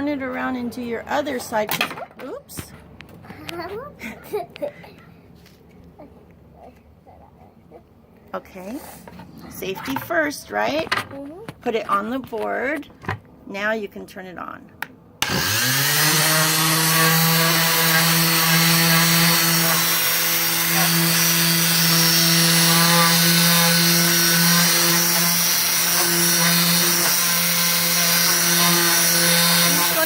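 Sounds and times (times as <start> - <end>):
electric orbital sander running: 15.2 - 30.0.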